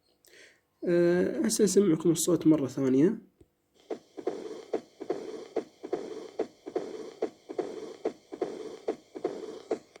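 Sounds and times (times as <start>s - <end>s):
heart murmur: 3.8s - 10.0s
heartbeat sounds: 3.8s - 10.0s.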